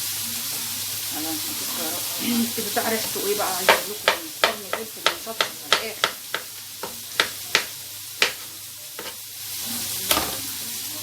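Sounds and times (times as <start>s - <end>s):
steady hiss: 0.0s - 11.0s
knife chopping on cutting board: 3.6s - 9.2s.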